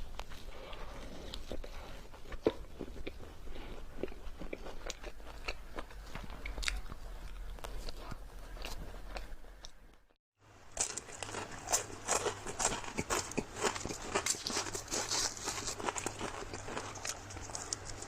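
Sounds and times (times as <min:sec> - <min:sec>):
ice cream crunching: 0:00.0 - 0:09.8, 0:10.6 - 0:18.0.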